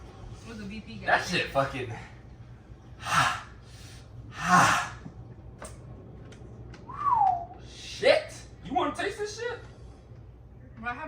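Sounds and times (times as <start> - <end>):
person blowing out breaths: 3.0 - 5.0.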